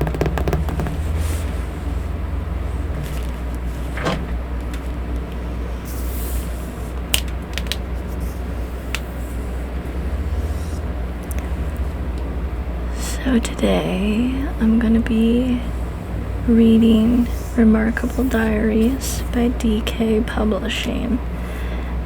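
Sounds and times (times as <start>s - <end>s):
electric fan humming: 0.0s - 22.0s
handling rustle: 2.8s - 9.8s.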